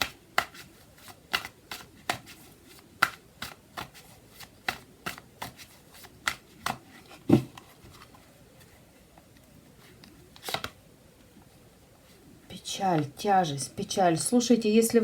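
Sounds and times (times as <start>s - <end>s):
cards tapping: 0.0s - 7.6s, 10.4s - 10.8s
cards being shuffled: 0.0s - 8.2s, 9.8s - 10.8s.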